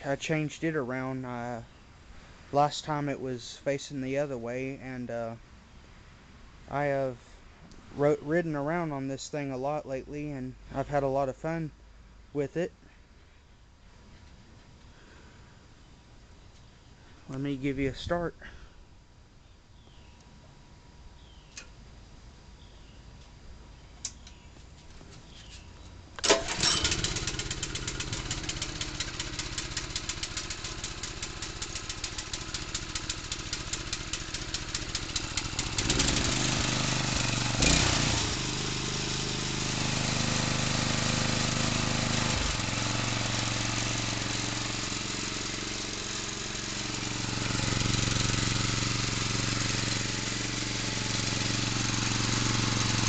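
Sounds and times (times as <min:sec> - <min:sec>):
riding mower engine running: 0:26.2 - 0:53.0.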